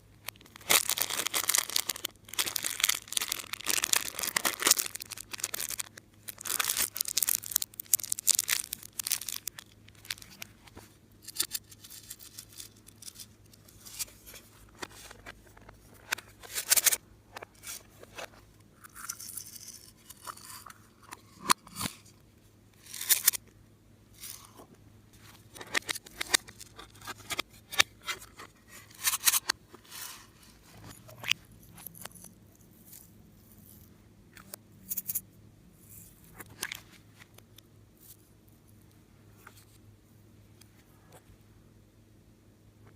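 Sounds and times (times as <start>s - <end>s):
plastic bags crinkling: 0.3s - 10.6s.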